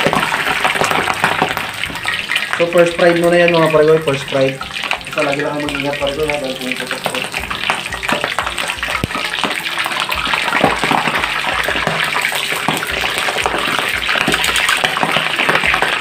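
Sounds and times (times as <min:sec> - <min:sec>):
meat deep-frying in hot oil: 0:00.0 - 0:16.0
oil crackling and popping: 0:00.0 - 0:16.0.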